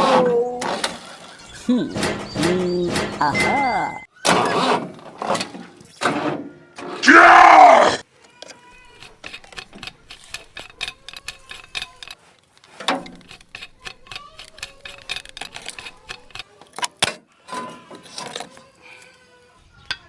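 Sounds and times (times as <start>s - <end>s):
louder knock: 1.9s - 4.0s.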